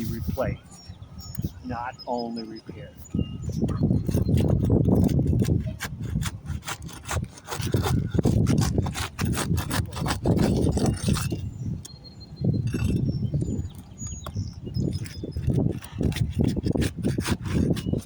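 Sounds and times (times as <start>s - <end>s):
low rumble on microphone: 2.7s - 11.8s
roof shingles scraping and cracking: 4.1s - 11.4s.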